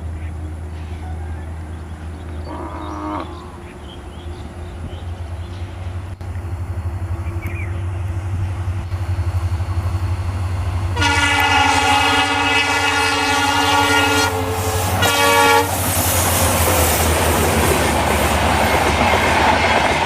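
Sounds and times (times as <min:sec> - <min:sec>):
diesel locomotive engine rumble: 0:00.0 - 0:20.0
train air horn chord: 0:11.0 - 0:16.5.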